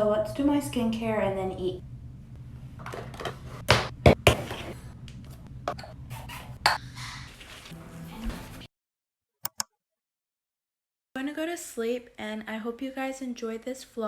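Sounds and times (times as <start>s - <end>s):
low steady hum: 0.0s - 8.7s.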